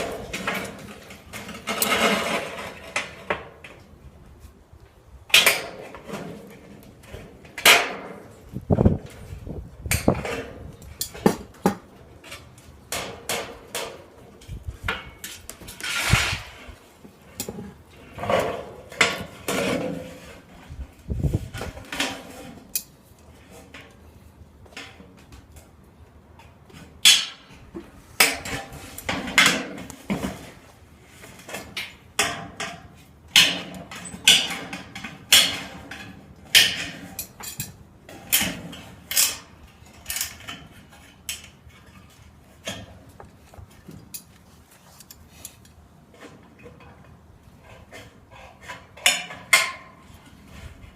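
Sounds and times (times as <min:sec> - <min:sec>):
sheet metal scraping: 0:00.0 - 0:03.3, 0:12.2 - 0:22.8.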